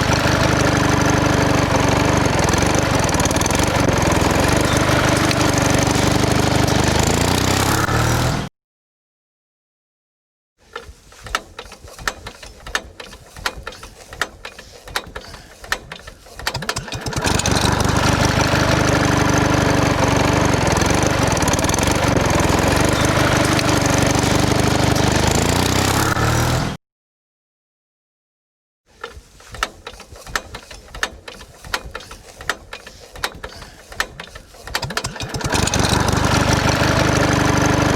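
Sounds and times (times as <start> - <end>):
engine running: 0.0 - 8.4, 12.6 - 26.7, 29.9 - 37.9
sharp clicks and knocks: 10.7 - 18.2, 29.0 - 36.6.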